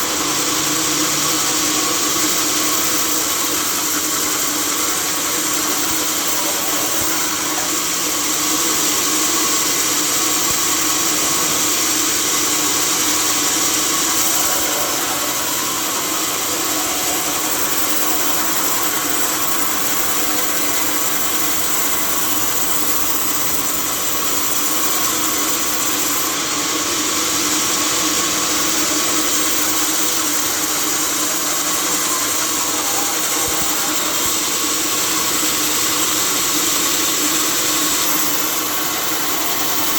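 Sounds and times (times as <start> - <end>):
log saw whining: 0.0 - 39.9.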